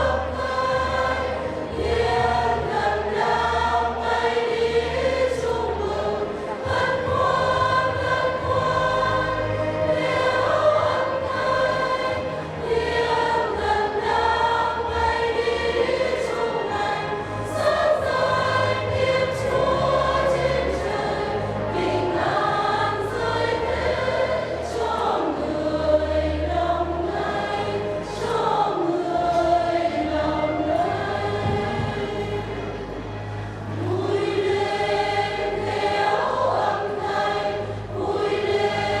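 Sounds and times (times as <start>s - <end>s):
choir singing: 0.0s - 39.0s
instrumental accompaniment: 0.0s - 39.0s
sustained low bass notes: 29.2s - 35.8s.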